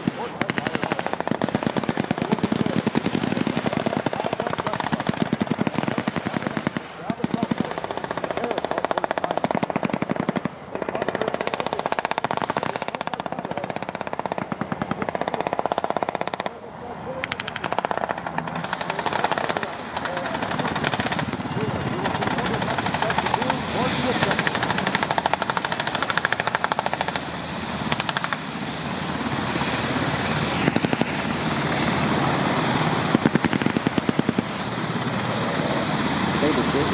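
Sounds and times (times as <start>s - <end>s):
automatic gunfire bursts: 0.0s - 16.6s, 17.2s - 21.4s
helicopter rotor blade slap: 0.0s - 36.9s.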